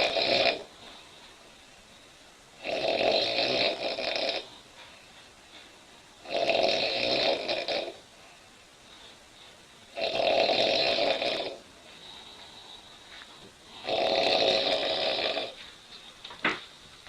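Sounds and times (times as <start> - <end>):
woman snoring loudly: 0.0 - 0.7, 2.6 - 4.5, 6.2 - 8.0, 9.9 - 11.6, 13.8 - 15.6.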